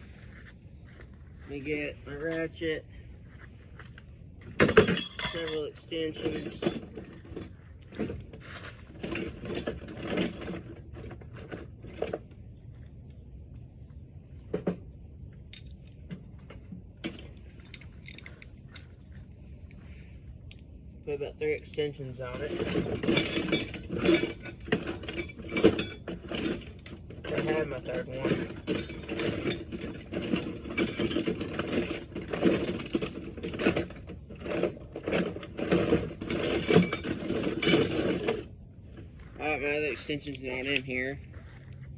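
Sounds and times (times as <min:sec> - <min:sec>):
metal tools clinking: 0:01.6 - 0:02.7, 0:04.5 - 0:12.3, 0:15.5 - 0:16.1, 0:17.0 - 0:19.1, 0:21.6 - 0:38.5, 0:39.2 - 0:41.2.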